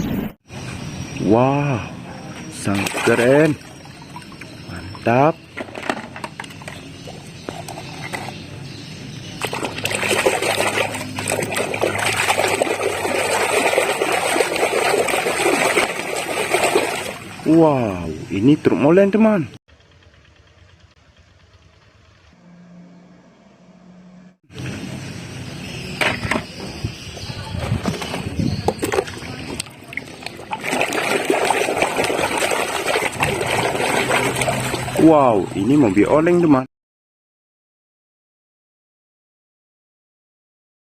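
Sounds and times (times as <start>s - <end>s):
water splashing and trickling: 2.5s - 8.4s, 9.2s - 18.0s, 27.0s - 36.4s.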